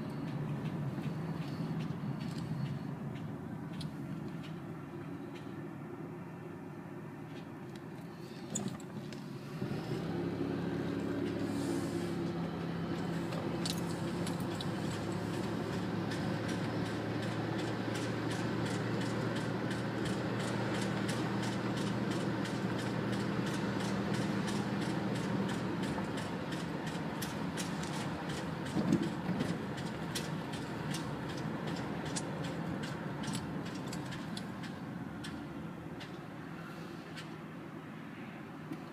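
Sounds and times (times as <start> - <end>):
fast engine ticking: 0.0 - 5.5, 10.8 - 36.2
car engine running: 0.0 - 6.1, 8.2 - 36.4.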